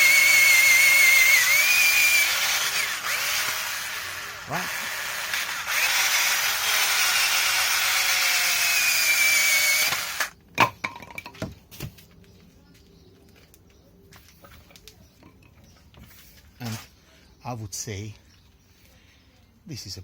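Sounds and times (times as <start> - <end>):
cordless drill boring through wood: 0.0 - 10.4.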